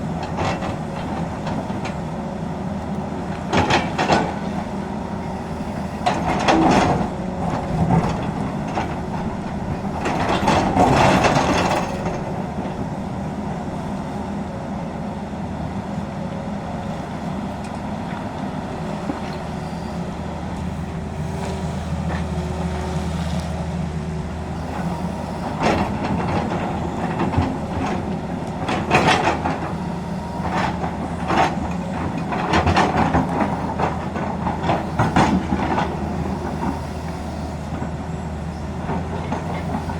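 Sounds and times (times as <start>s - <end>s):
excavator diesel engine running: 0.0s - 39.9s
metallic clanking and scraping: 5.8s - 12.8s.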